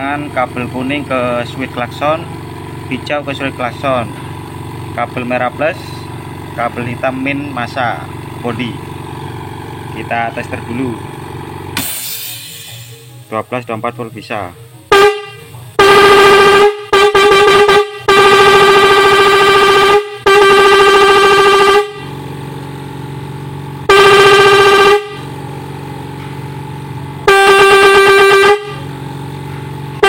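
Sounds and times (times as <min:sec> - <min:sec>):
car horn beeps and blasts: 0:14.8 - 0:22.2, 0:23.8 - 0:25.4, 0:27.2 - 0:28.9.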